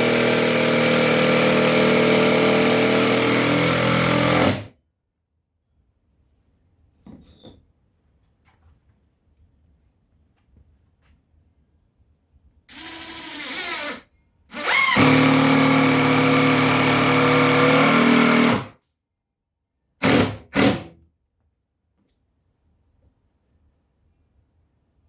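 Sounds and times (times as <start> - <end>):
power drill driving screws: 0.0 - 4.7, 12.7 - 18.7, 20.0 - 20.9.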